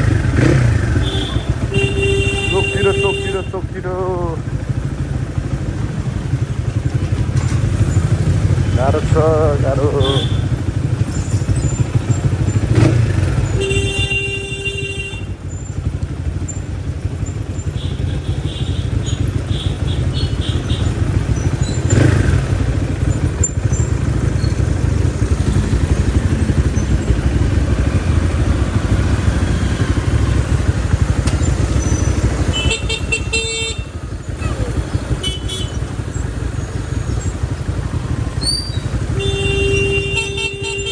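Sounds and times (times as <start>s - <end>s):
motorcycle engine rumble: 0.0s - 40.9s
vehicle horn: 0.1s - 4.2s, 8.7s - 10.7s, 12.7s - 15.9s, 17.1s - 21.2s, 31.4s - 34.2s, 35.0s - 36.1s, 38.9s - 40.9s.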